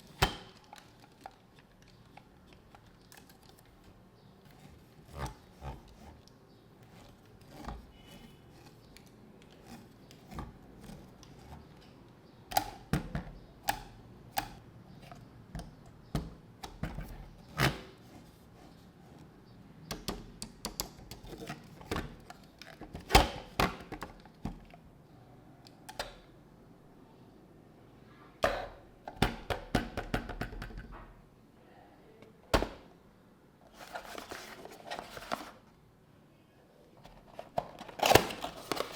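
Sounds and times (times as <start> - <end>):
packaging rustle: 0.0 - 6.2, 33.7 - 35.7, 37.2 - 38.9
plastic clicks and taps: 19.9 - 21.3.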